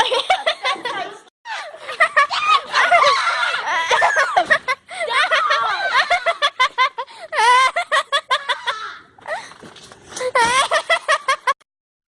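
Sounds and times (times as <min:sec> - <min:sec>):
people laughing and giggling: 0:00.0 - 0:11.6
high-pitched squeal of laughter: 0:01.5 - 0:06.7, 0:07.3 - 0:09.4.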